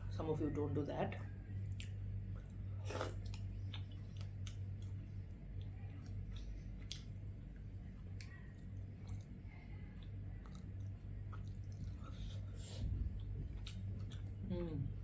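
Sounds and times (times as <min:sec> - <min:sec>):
steady low hum: 0:00.0 - 0:15.0
chewing with wet mouth clicks: 0:01.2 - 0:14.4.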